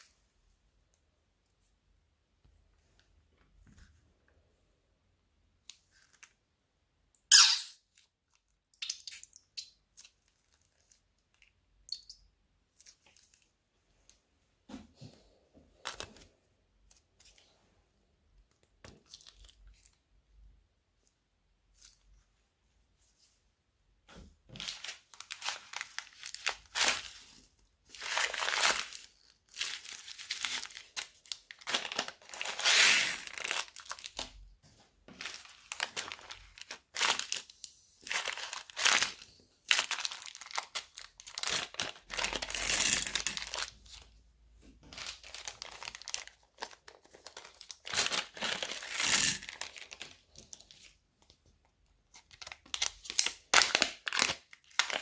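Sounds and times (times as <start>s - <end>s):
plastic bags crinkling: 24.6s - 34.4s, 35.2s - 44.1s, 44.9s - 50.9s, 52.3s - 55.0s.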